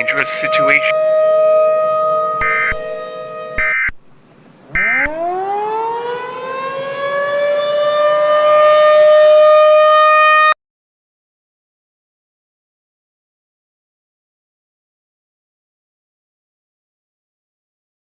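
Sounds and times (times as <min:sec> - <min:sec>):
civil defense siren: 0:01.0 - 0:03.5, 0:05.2 - 0:10.5.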